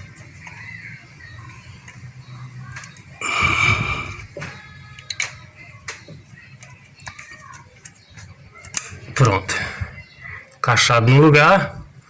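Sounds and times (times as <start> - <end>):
strained wheezing breath: 3.2 - 4.4.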